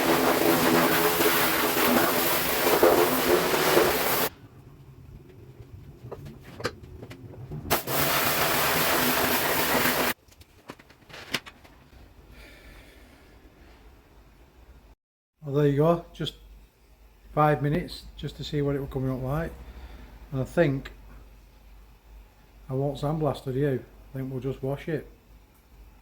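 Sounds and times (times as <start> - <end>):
pressure washer spraying: 0.0 - 4.3, 7.7 - 10.2.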